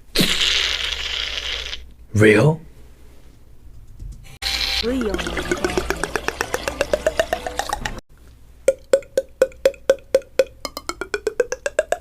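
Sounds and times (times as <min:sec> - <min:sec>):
cartoon popping sound effect: 0:05.0 - 0:08.0, 0:08.7 - 0:12.0.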